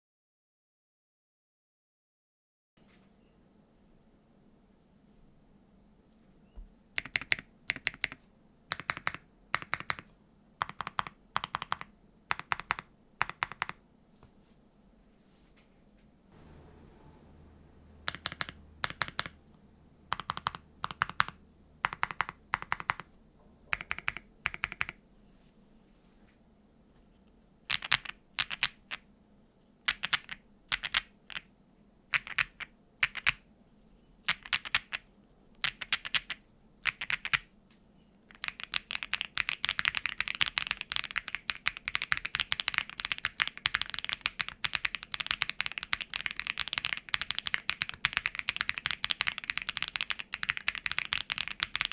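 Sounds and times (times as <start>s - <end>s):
mechanical keyboard typing: 7.0s - 13.8s, 18.0s - 19.4s, 20.1s - 23.1s, 23.7s - 25.0s, 27.7s - 29.0s, 29.9s - 31.5s, 32.1s - 33.4s, 34.3s - 35.0s, 35.6s - 37.5s, 38.3s - 51.9s.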